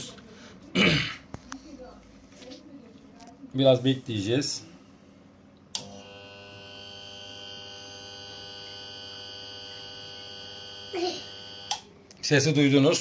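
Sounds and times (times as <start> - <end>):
compressor humming: 5.2 - 13.0.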